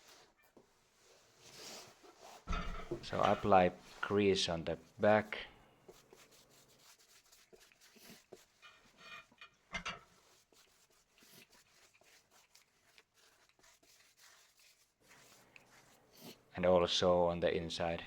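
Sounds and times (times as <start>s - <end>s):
brush scrape: 0.0s - 5.2s, 5.9s - 16.5s
brush rubbing on tire: 5.9s - 9.3s, 10.1s - 16.4s.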